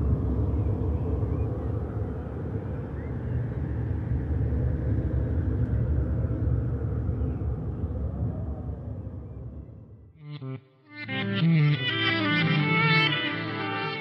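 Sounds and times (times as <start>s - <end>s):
low rumble of traffic: 0.0s - 10.2s.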